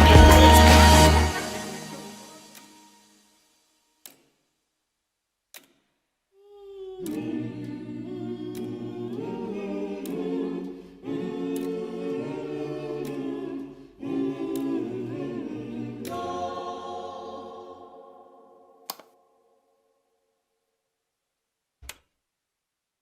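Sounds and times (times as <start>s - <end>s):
a cappella voices singing chords: 0.0s - 2.8s, 6.5s - 19.0s.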